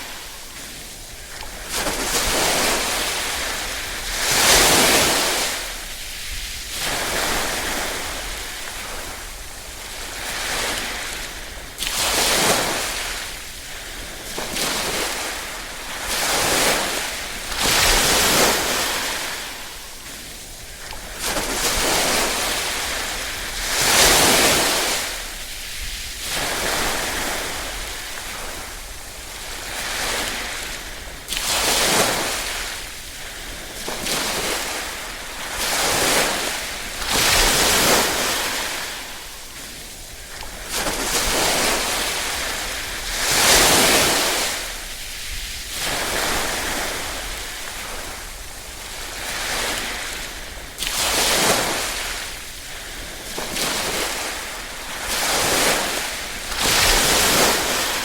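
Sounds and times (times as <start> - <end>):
small waves washing on shore: 0.0 - 58.0.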